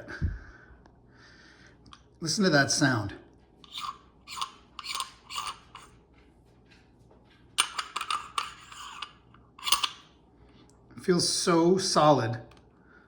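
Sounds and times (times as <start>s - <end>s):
metal cap scraping on threads: 3.6s - 5.9s, 7.6s - 10.0s.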